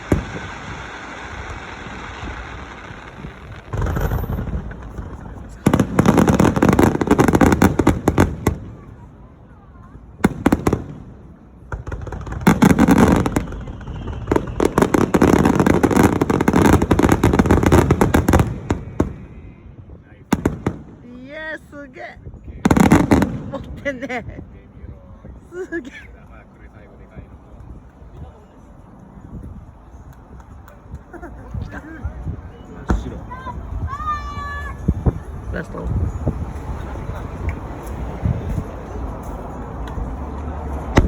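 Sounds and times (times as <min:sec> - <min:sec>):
fireworks shells bursting and crackling: 0:00.0 - 0:09.0, 0:10.2 - 0:19.3, 0:22.6 - 0:24.4.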